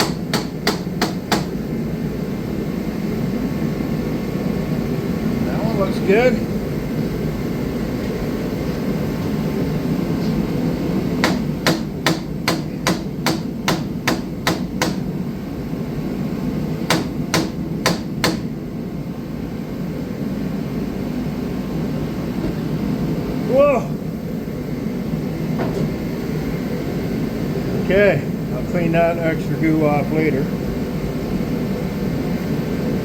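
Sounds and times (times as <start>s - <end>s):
hammer tapping: 0.0s - 1.6s, 11.2s - 15.0s, 16.9s - 18.5s.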